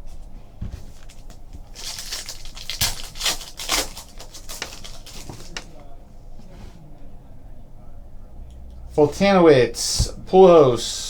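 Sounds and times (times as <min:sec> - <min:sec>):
cards rustling: 0:00.8 - 0:05.9
wrapper tearing and crinkling: 0:01.0 - 0:05.8.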